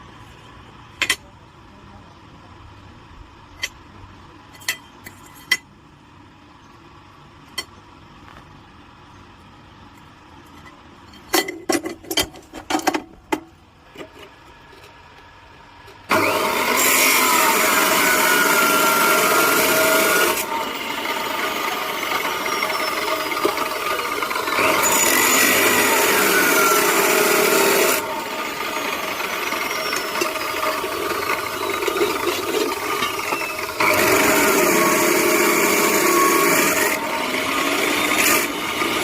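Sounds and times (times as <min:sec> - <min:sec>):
power cutter grinding steel: 0:16.1 - 0:39.0.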